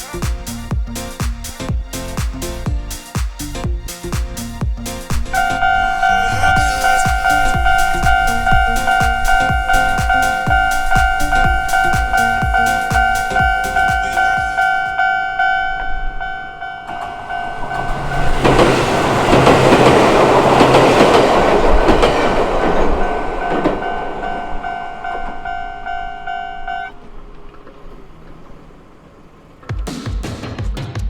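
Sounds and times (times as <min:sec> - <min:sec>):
train passing: 0:00.0 - 0:29.8
level-crossing bell dinging: 0:05.3 - 0:18.3, 0:22.8 - 0:27.0.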